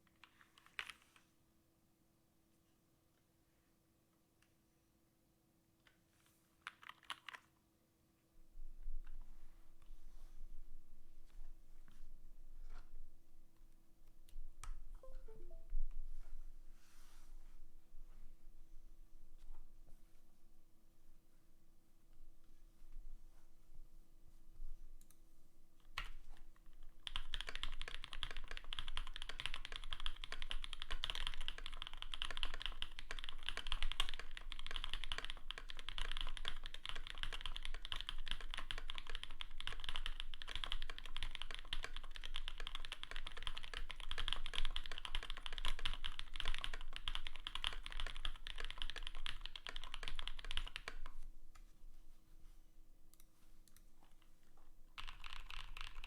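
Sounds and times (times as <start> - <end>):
mechanical keyboard typing: 6.7 - 7.5, 27.0 - 51.2, 55.0 - 56.0.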